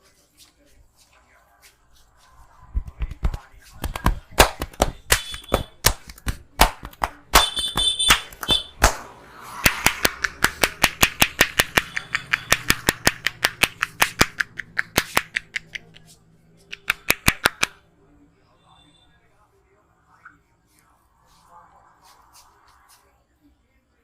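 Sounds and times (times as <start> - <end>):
hand slaps on head: 9.6 - 15.8.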